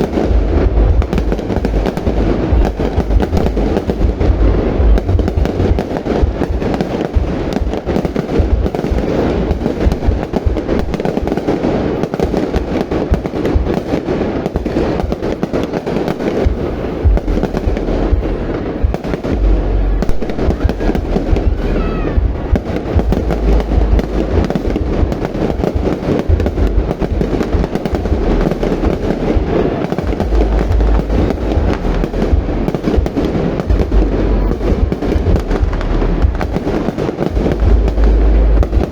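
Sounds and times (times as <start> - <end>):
fireworks booms: 0.0 - 38.9
fireworks crackling: 0.0 - 38.9.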